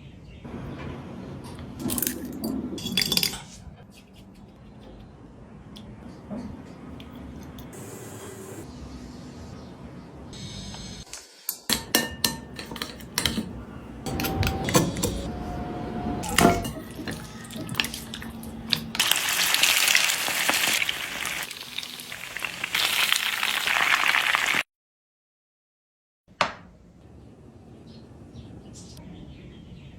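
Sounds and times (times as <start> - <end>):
clatter of dishes and pans: 11.6 - 13.6, 16.2 - 17.9.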